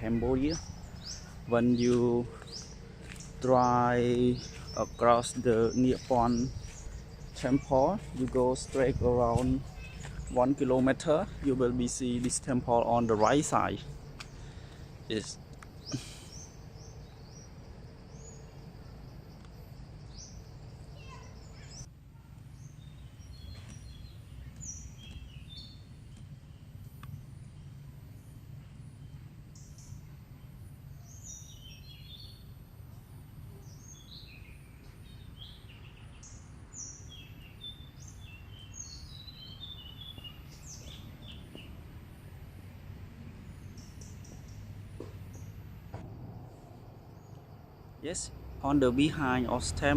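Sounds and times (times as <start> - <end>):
birds chirping: 0.0 - 49.9
low rumble: 45.7 - 48.8.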